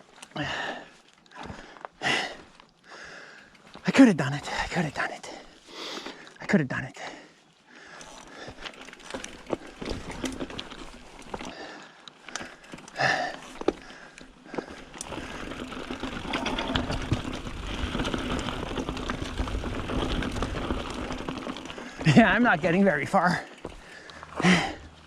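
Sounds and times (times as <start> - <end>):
bike knocking and rattling: 7.9 - 25.0.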